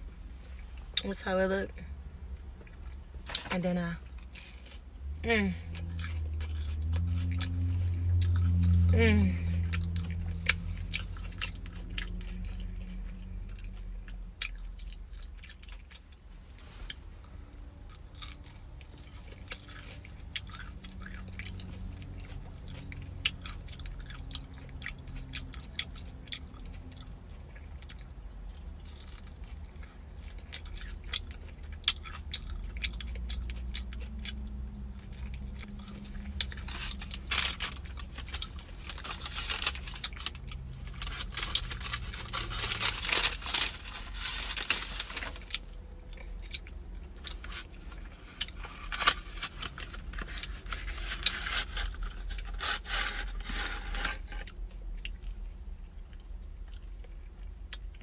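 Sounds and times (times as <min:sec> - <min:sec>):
chewing crunchy food: 0:05.7 - 0:58.0
rustling: 0:35.0 - 0:45.8, 0:47.2 - 0:54.5.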